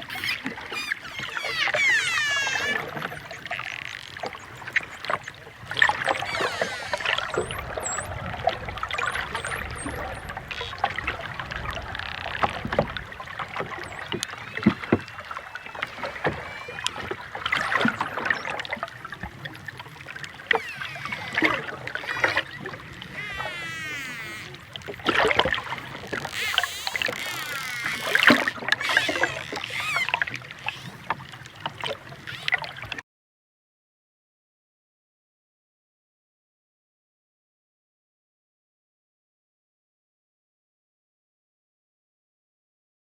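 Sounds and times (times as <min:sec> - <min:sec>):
dolphin whistles: 0:00.0 - 0:03.4, 0:05.9 - 0:08.1, 0:13.9 - 0:18.5, 0:20.6 - 0:24.6, 0:28.8 - 0:31.0
dolphin clicks: 0:00.0 - 0:08.1, 0:20.5 - 0:32.8.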